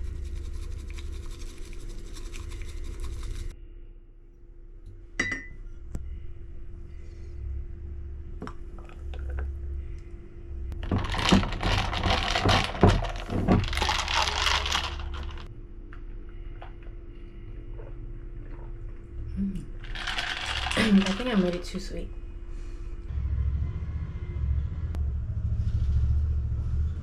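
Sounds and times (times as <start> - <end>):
glass clinking: 5.2 - 5.6.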